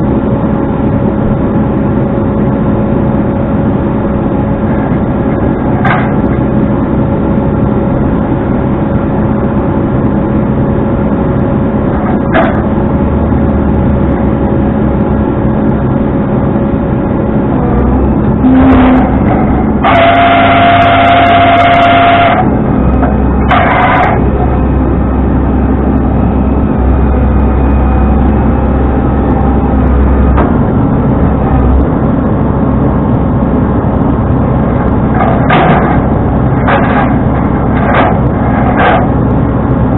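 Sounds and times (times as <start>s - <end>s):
truck engine and road noise: 0.0s - 39.9s
vehicle horn beeps: 18.4s - 19.2s, 19.8s - 22.5s.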